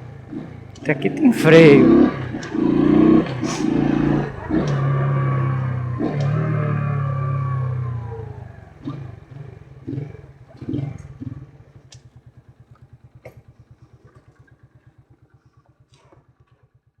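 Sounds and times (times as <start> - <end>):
scooter engine idling: 0.0 - 16.9
throttle puffs: 3.2 - 6.4.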